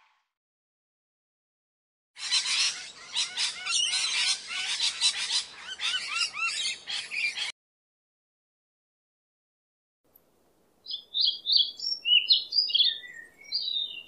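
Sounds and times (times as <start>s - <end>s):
small birds chirping: 2.2s - 7.5s, 10.8s - 14.0s.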